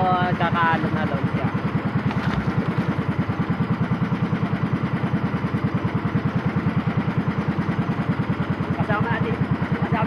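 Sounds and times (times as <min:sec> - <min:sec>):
boat engine chugging: 0:00.0 - 0:10.0.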